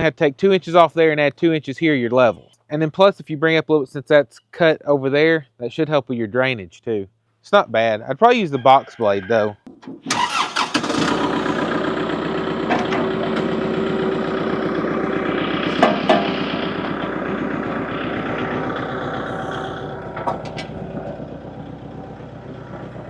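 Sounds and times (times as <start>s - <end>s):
tractor engine running: 9.7s - 23.0s.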